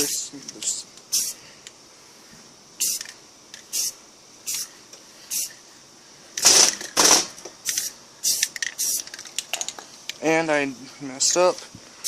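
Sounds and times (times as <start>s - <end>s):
aerosol spray can hissing: 1.1s - 1.4s, 2.8s - 5.6s, 6.4s - 9.3s.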